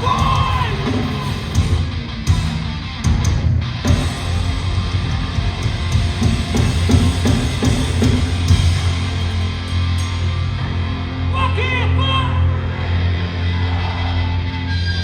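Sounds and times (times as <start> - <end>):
drum kit: 0.0 - 11.3
electric guitars: 0.0 - 15.0.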